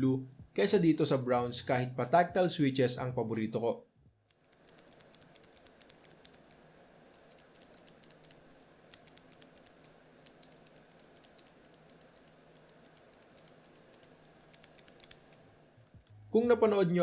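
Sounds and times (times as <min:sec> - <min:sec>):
mechanical keyboard typing: 0:04.3 - 0:06.6, 0:07.2 - 0:15.4.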